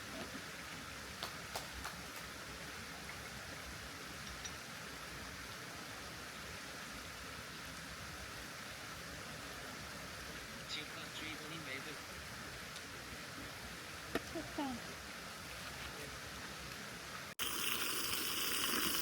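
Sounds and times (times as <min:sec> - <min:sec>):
stream flowing over rocks: 0:16.1 - 0:19.0.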